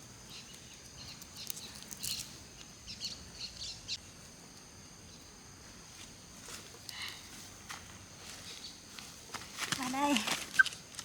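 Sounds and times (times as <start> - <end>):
birds chirping: 0.2 - 4.1.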